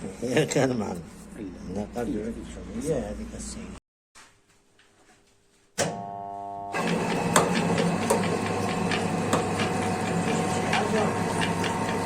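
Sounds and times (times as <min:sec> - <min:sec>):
bread machine motor humming: 0:06.7 - 0:12.0.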